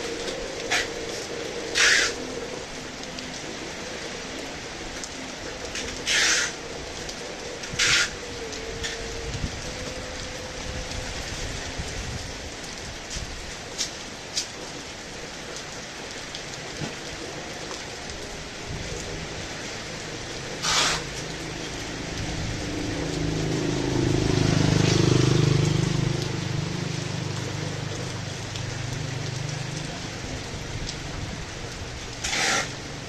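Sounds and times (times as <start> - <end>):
heavy rain falling: 0.0 - 33.0.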